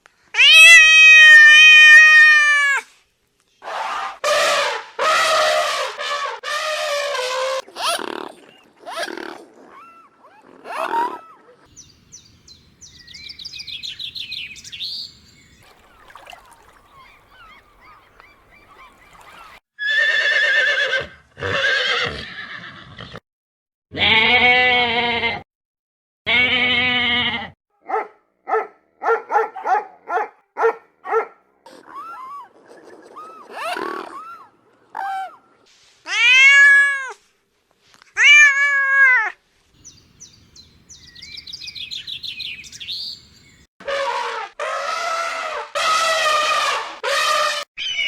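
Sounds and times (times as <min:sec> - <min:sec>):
high chirping: 0:11.7 - 0:15.6, 0:39.8 - 0:43.7.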